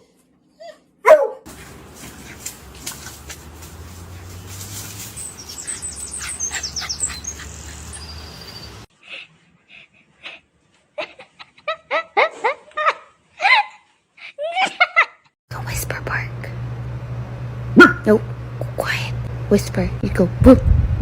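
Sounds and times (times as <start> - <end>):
dog whining yips: 0.0 - 1.4, 5.5 - 8.7
steady low hum: 1.5 - 8.9, 15.5 - 21.0.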